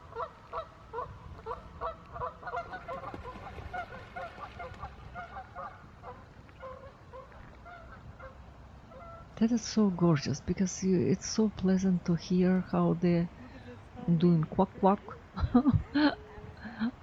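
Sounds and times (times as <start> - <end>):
ducks quacking: 0.1 - 9.2.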